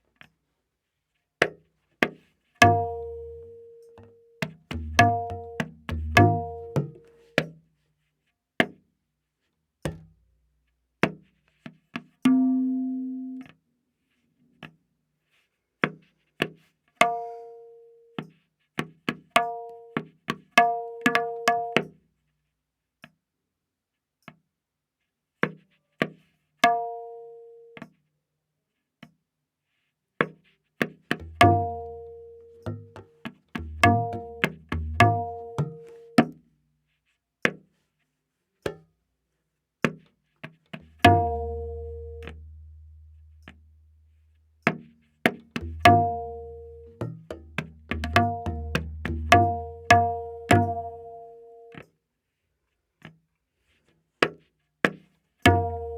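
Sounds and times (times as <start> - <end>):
tabla strokes: 1.4 - 8.8, 9.8 - 10.4, 11.0 - 22.0, 29.7 - 37.9, 38.6 - 38.9, 39.8 - 52.0, 53.7 - 55.9.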